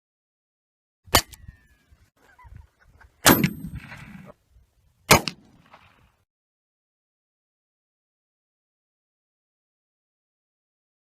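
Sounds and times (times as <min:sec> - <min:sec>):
gunshots: 0:03.2 - 0:04.3, 0:05.1 - 0:05.8.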